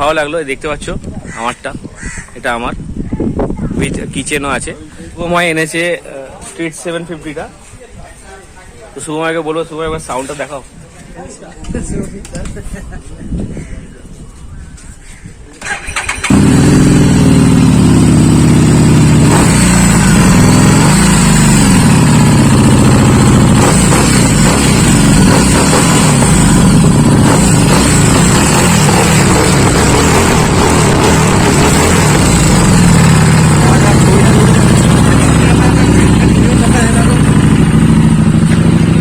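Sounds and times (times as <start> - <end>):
motorcycle engine starting and revving: 15.6 - 39.0.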